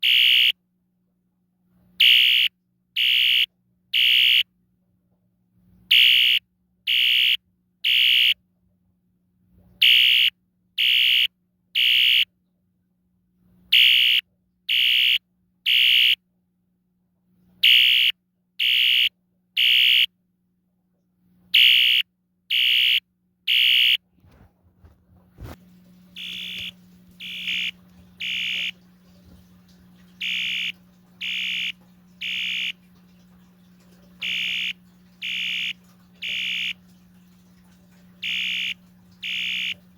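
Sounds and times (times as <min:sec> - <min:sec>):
fire alarm horn beeping: 0:00.0 - 0:00.6, 0:02.0 - 0:04.4, 0:05.9 - 0:08.4, 0:09.8 - 0:12.3, 0:13.7 - 0:16.2, 0:17.6 - 0:20.1, 0:21.6 - 0:24.0, 0:26.2 - 0:28.9, 0:30.2 - 0:32.9, 0:34.2 - 0:37.0, 0:38.2 - 0:39.8
faint low hum: 0:00.0 - 0:39.9.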